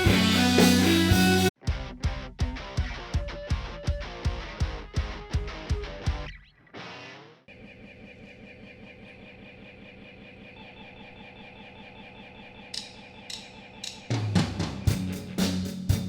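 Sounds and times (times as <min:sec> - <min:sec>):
full band playing: 0:00.0 - 0:01.5, 0:14.1 - 0:16.0
electric guitar drone: 0:00.0 - 0:03.6
drum stick ticks: 0:12.7 - 0:14.2.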